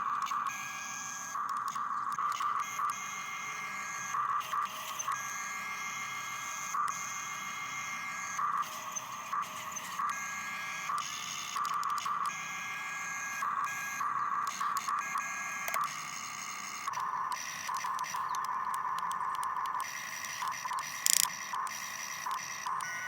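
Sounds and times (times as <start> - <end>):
small electric motors whining: 0.2 - 23.0
sharp click: 17.0 - 21.7.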